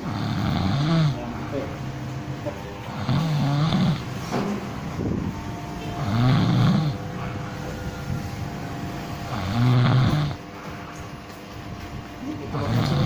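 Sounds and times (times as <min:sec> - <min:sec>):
person snoring: 0:00.0 - 0:01.8, 0:02.8 - 0:04.1, 0:05.9 - 0:07.9, 0:09.2 - 0:10.8, 0:12.5 - 0:13.0
faint steady hum: 0:00.0 - 0:13.0.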